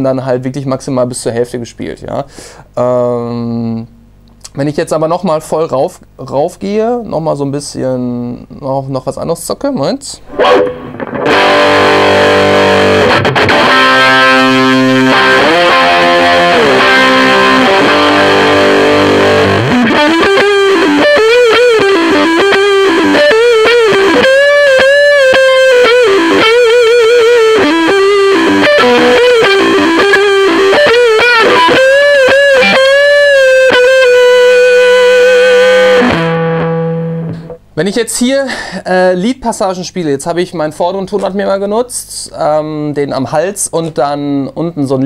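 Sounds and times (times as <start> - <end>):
distorted electric guitar: 10.2 - 37.7.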